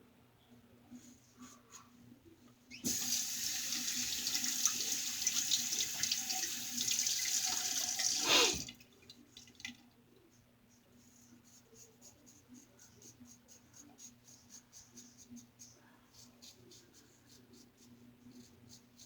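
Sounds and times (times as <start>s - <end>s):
sink faucet water running: 2.8s - 8.7s.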